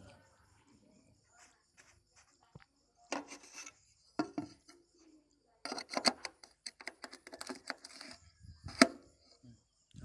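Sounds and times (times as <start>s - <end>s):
hard objects clicking and knocking: 4.2s - 4.8s, 5.6s - 9.0s.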